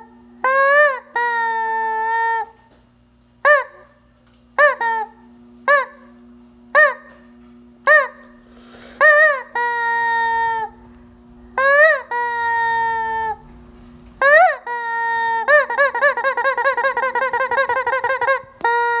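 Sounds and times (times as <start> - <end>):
rubber chicken toy honking: 0.0 - 2.6, 3.4 - 4.0, 4.6 - 7.2, 7.9 - 8.4, 9.0 - 10.8, 11.6 - 13.4, 14.2 - 19.0.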